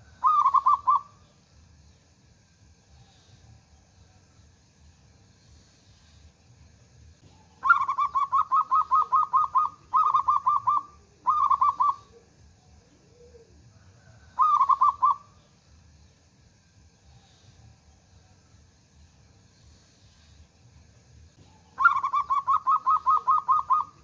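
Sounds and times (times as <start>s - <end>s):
dove cooing song: 0.0s - 1.3s, 7.2s - 15.4s, 21.4s - 24.0s.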